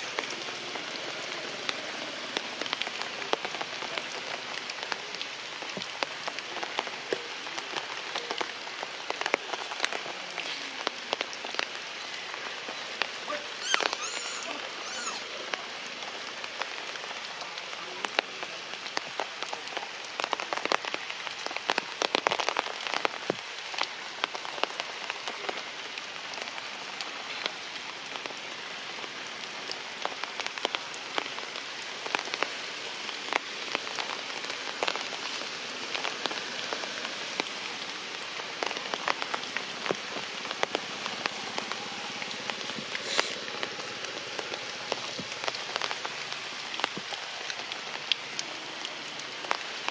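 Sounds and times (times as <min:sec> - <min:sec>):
heavy rain: 0:00.0 - 0:49.9.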